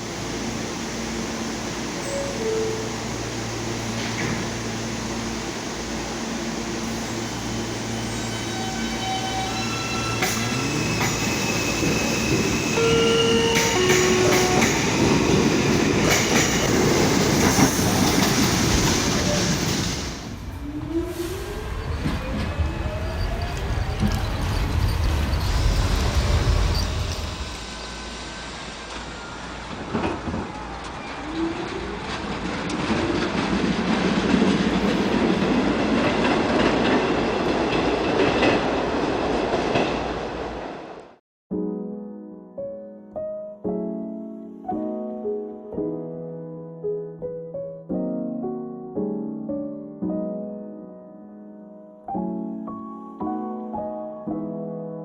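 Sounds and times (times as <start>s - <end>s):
subway train rumbling on track: 0.0s - 41.2s
wheel squeal: 8.1s - 16.7s, 21.8s - 28.3s.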